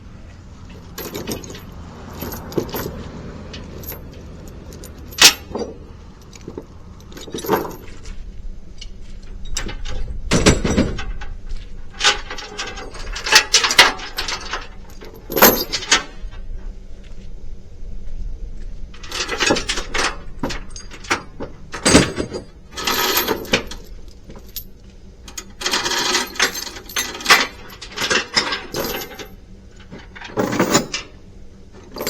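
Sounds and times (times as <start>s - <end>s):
chains rattling against metal: 0.7s - 8.2s, 9.3s - 16.4s, 19.0s - 31.2s, 31.8s - 32.0s.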